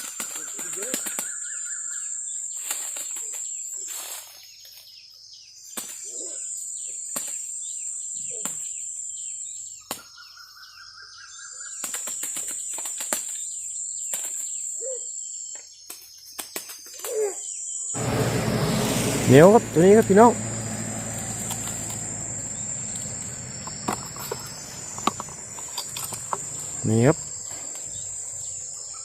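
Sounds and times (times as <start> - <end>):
lower insect tone: 17.4 - 29.0
insects buzzing: 18.0 - 29.0.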